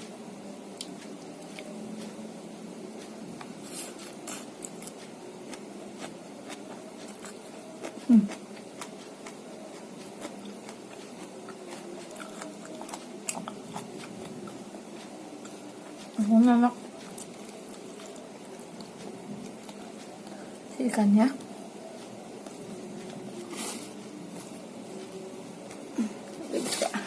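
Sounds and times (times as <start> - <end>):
person chewing food: 3.0 - 16.2, 16.8 - 20.5.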